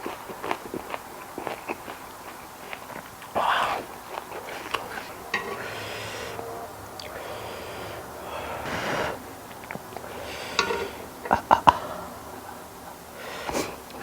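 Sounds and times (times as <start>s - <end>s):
person chewing food: 0.0s - 12.2s
loud nasal exhales: 5.6s - 9.4s, 10.0s - 11.1s, 13.2s - 13.8s.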